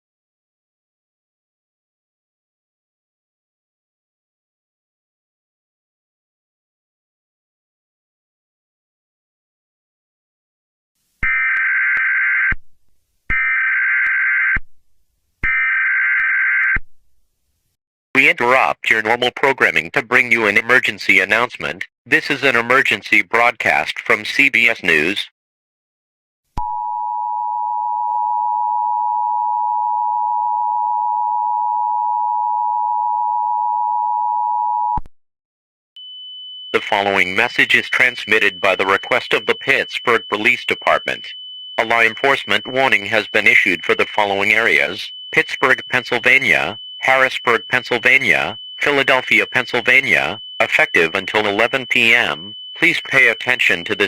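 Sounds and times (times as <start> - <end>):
shrill digital data tones: 36.8 - 54.0.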